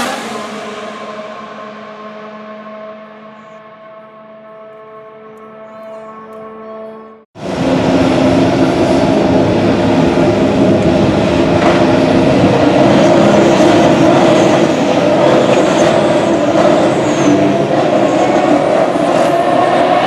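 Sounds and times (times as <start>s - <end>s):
racing car engines at high revs: 0.0s - 4.6s.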